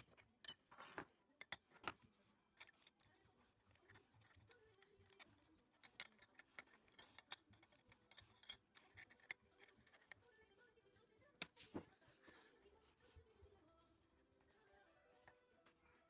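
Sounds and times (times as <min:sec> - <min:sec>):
small clicks and taps of tools: 0:00.0 - 0:10.2.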